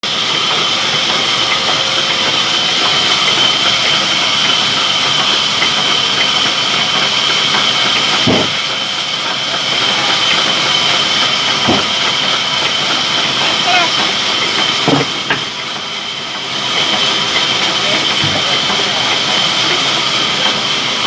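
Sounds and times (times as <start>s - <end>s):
sawmill saw machinery whining: 0.0s - 21.0s.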